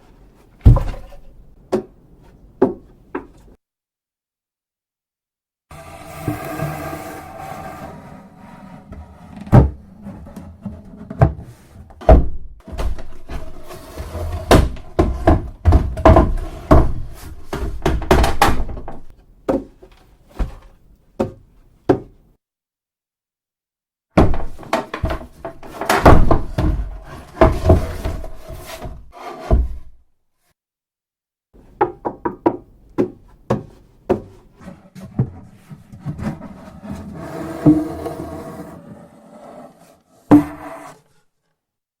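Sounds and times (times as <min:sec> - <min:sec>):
heavy thunks on wooden coffin: 0:00.6 - 0:01.2, 0:24.2 - 0:28.2.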